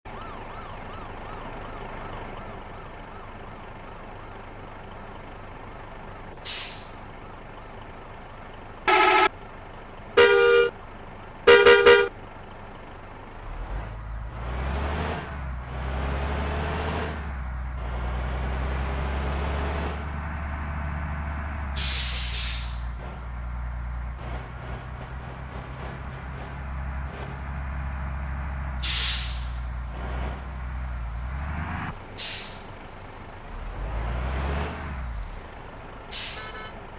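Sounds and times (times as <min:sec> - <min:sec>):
heavy bus engine: 0:00.1 - 0:36.9
air brake hisses: 0:06.4 - 0:07.0, 0:21.8 - 0:22.9, 0:28.8 - 0:29.6, 0:32.2 - 0:32.7, 0:36.1 - 0:36.6
multi-tone bus horn blasts: 0:08.8 - 0:09.3, 0:10.2 - 0:10.7, 0:11.4 - 0:12.1, 0:36.4 - 0:36.8.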